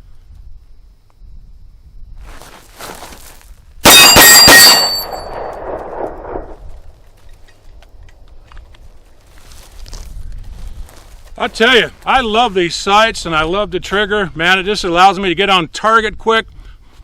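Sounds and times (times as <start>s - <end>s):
pistol shots: 3.8s - 6.6s
metallic ringing: 3.9s - 5.6s.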